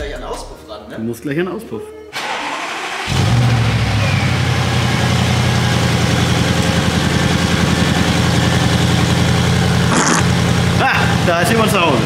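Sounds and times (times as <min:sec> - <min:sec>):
car engine idling: 0:02.2 - 0:12.0.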